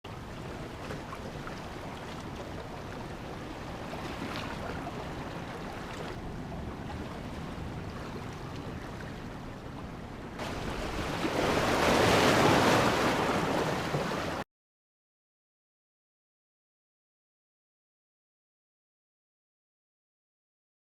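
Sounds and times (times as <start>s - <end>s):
ocean surf washing ashore: 0.1s - 14.4s.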